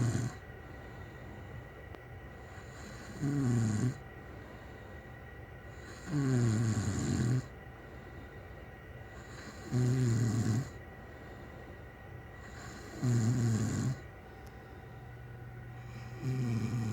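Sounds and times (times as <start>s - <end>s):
person snoring loudly: 0.0s - 0.4s, 2.8s - 4.0s, 5.8s - 7.5s, 9.3s - 10.8s, 12.4s - 14.0s, 15.9s - 16.9s
quiet breathing: 0.0s - 16.9s.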